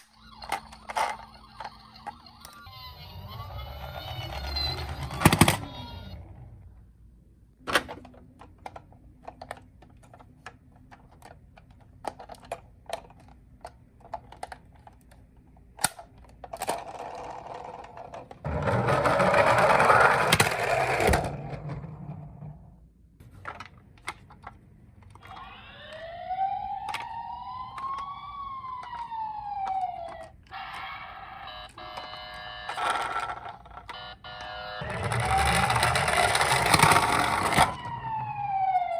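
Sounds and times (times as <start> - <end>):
plastic toy cars clicking: 0.0 - 6.1, 7.7 - 21.4, 23.4 - 38.0
toy electronic siren: 0.0 - 6.6, 25.2 - 38.9.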